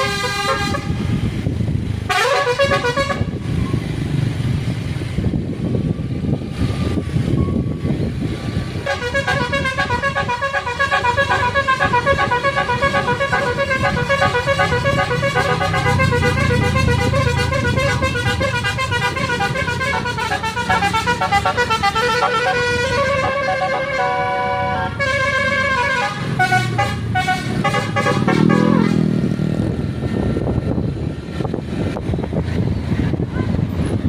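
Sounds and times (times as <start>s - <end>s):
multi-tone bus horn melody: 0.0s - 1.3s, 2.0s - 3.6s, 8.8s - 29.4s
bus engine rumbling: 0.0s - 34.0s.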